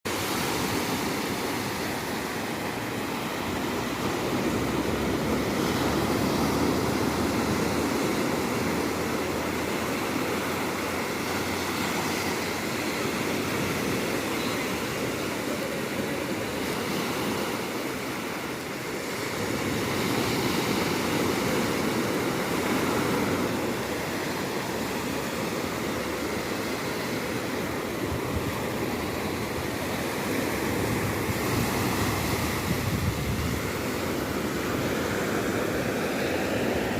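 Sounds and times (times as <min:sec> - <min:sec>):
ocean waves breaking: 0:00.1 - 0:36.9.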